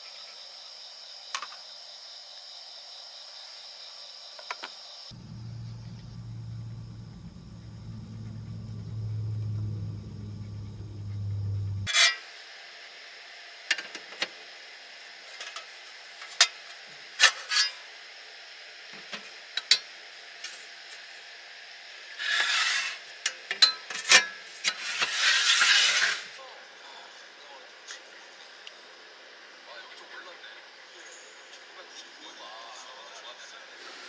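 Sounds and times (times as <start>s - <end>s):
low hum: 5.1s - 12.0s.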